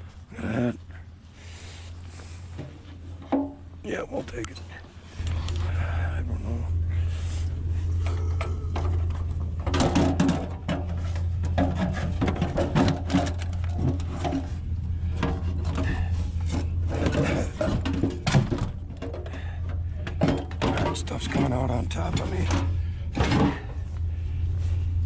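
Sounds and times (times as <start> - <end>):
steady low hum: 0.0 - 25.0
scrap metal knocking and clattering: 2.1 - 3.8, 6.7 - 24.2.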